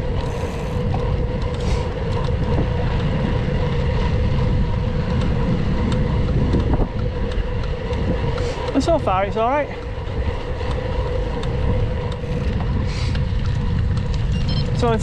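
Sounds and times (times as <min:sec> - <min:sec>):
bike tyres rolling on road: 0:00.0 - 0:15.0
wind on microphone: 0:00.0 - 0:15.0
light ticks: 0:05.0 - 0:08.8.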